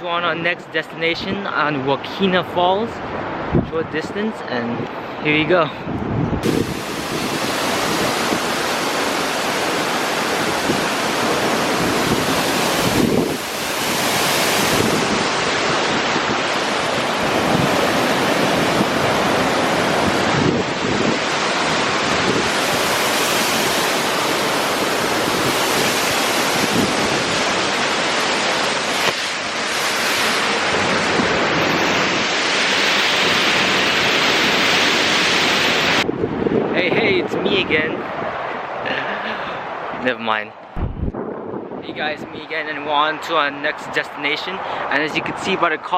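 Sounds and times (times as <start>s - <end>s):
waterfall roaring: 6.4s - 36.0s.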